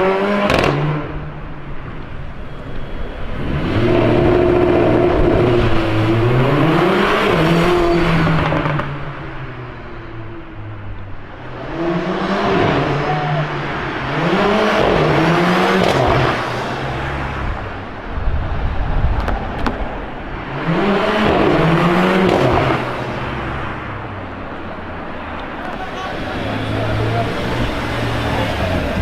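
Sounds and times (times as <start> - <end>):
car engine revving: 3.2 - 9.5, 11.2 - 17.8, 20.4 - 29.0.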